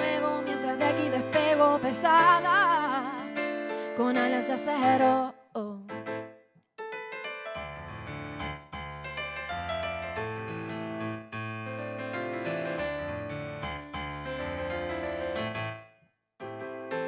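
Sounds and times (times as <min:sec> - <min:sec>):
piano playing sustained chords: 0:00.0 - 0:04.2.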